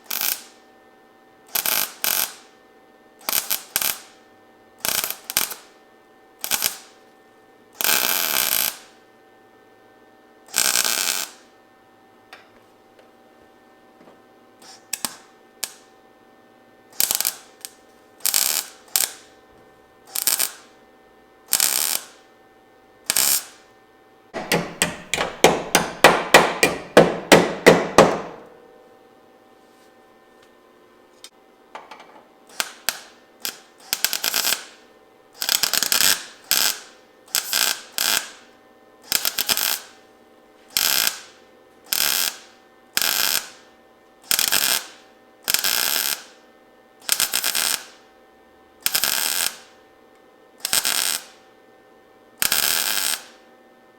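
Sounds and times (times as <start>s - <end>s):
welder crackling: 14.6s - 15.9s, 17.0s - 19.3s, 20.1s - 20.7s, 24.4s - 28.5s, 32.5s - 34.8s, 35.4s - 38.4s, 39.1s - 39.9s, 40.7s - 41.3s, 44.3s - 46.3s, 47.1s - 48.0s, 48.8s - 49.7s, 50.6s - 51.4s, 52.4s - 53.4s.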